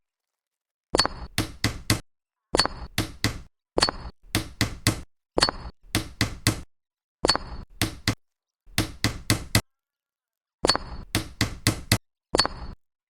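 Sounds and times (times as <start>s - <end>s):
small tools tapping: 1.0s - 2.0s, 2.6s - 9.6s, 10.6s - 12.8s.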